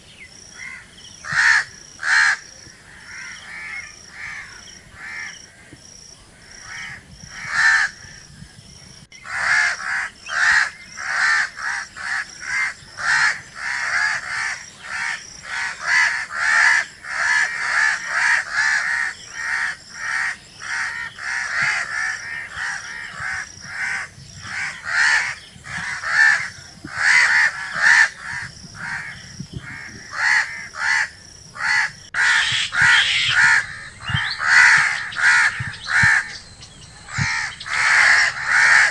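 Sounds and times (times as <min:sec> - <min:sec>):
crows cawing: 0:00.5 - 0:05.7, 0:06.5 - 0:08.2, 0:09.2 - 0:38.9.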